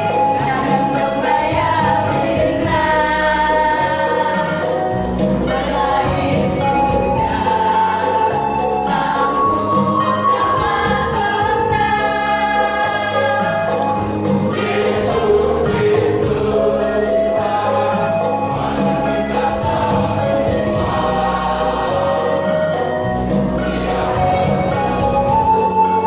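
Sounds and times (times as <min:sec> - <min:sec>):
choir singing: 0:00.0 - 0:26.0.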